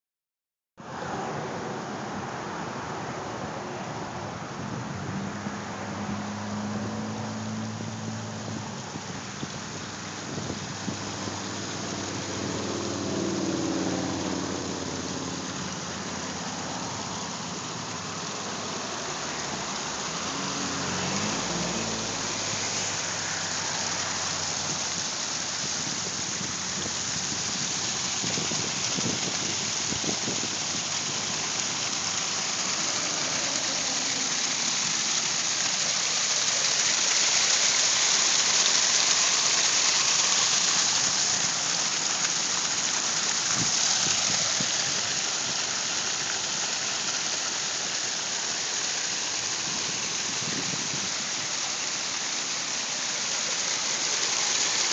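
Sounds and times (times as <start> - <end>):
water rushing over rocks: 0.8 - 54.9
low engine hum: 4.0 - 54.9.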